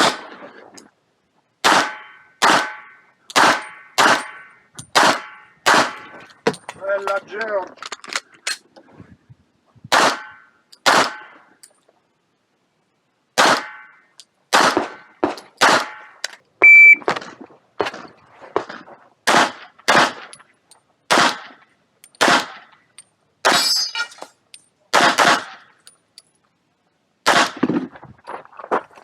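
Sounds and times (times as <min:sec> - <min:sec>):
pistol shots: 0:01.6 - 0:06.1, 0:09.9 - 0:11.4, 0:13.4 - 0:13.8, 0:14.5 - 0:16.1, 0:19.3 - 0:20.3, 0:21.1 - 0:21.6, 0:22.2 - 0:22.7, 0:24.9 - 0:25.7, 0:27.2 - 0:27.8
short high beep: 0:16.6 - 0:17.0.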